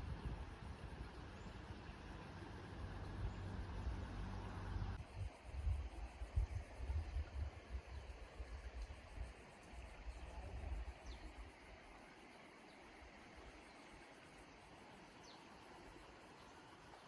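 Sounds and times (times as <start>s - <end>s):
wind rumble on microphone: 0.0s - 11.5s.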